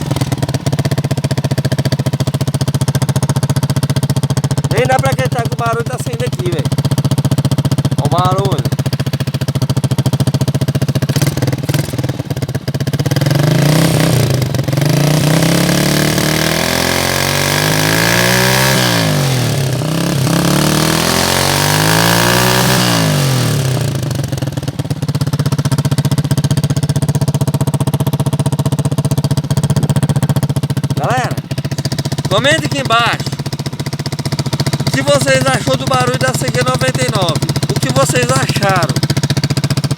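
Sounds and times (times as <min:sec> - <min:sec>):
motorcycle engine revving and idling: 0:00.0 - 0:39.9.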